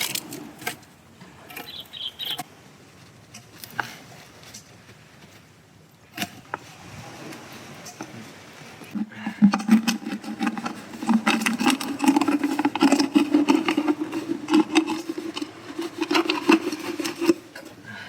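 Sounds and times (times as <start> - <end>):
knife scraping plastic bottle: 9.0 - 17.8.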